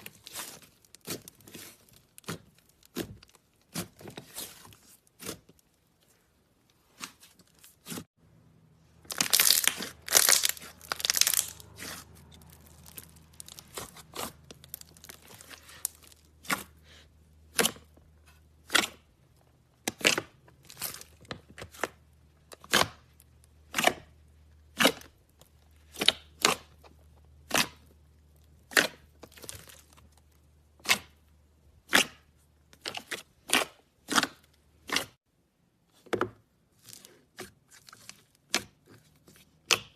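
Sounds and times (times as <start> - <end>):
slime crackling: 9.0 - 17.6
slime popping: 9.1 - 16.7.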